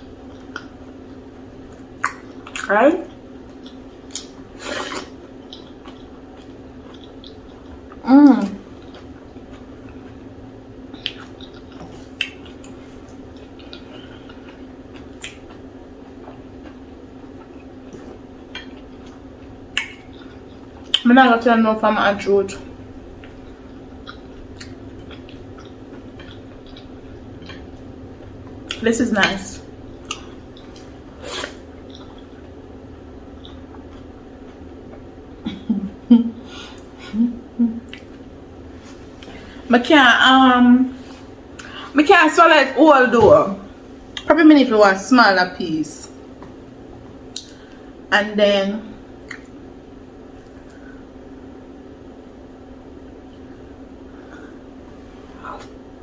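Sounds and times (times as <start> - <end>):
steady low hum: 0.0 - 56.0
wet smacks of eating: 11.0 - 15.6, 47.3 - 47.8, 49.2 - 49.6.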